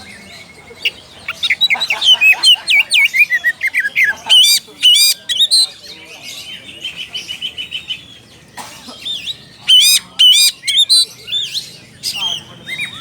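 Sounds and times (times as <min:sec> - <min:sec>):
bird chattering high notes: 0:00.8 - 0:05.7, 0:09.1 - 0:13.0
bird whistled slurs: 0:09.1 - 0:13.0.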